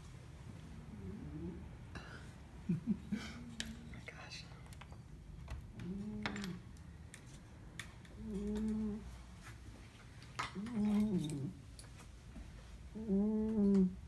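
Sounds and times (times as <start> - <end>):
cat snoring: 0.9 - 1.7, 8.2 - 9.1, 13.0 - 14.0.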